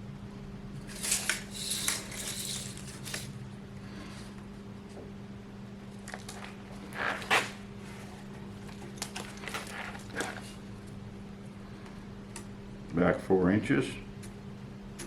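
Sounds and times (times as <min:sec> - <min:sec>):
steady low hum: 0:00.0 - 0:15.0.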